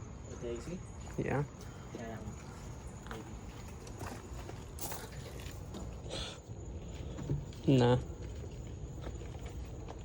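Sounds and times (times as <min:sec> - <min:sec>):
footsteps on hard surface: 0:02.3 - 0:06.0.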